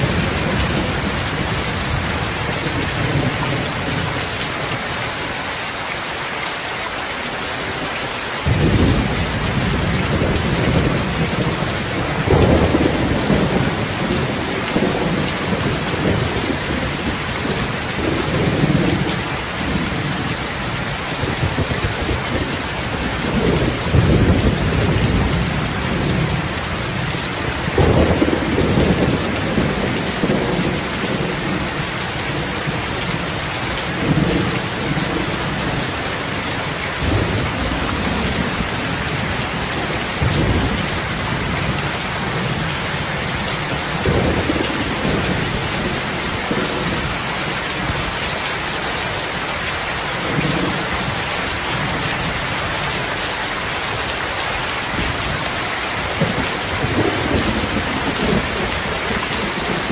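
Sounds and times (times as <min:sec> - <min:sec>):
heavy rain falling: 0:00.0 - 0:59.9
thunder rumbling: 0:08.5 - 0:48.1, 0:54.9 - 0:59.9.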